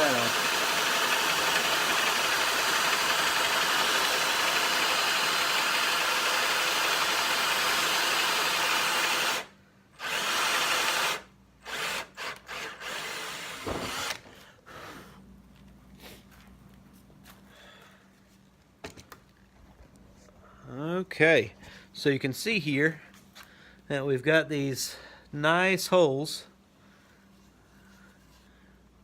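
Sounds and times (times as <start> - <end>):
power drill boring wood: 0.0 - 14.4.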